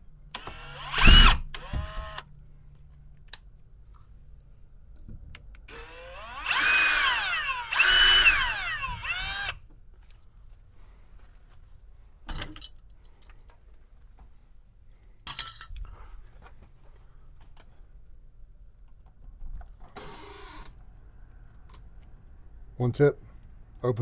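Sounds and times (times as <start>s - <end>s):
cordless drill driving screws: 0.4s - 2.2s, 5.7s - 9.6s, 20.0s - 20.8s.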